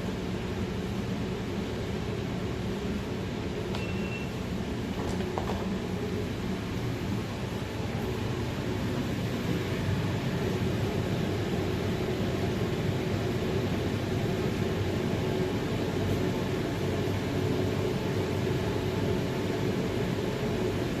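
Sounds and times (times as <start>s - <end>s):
faint constant hum: 0.0s - 21.0s.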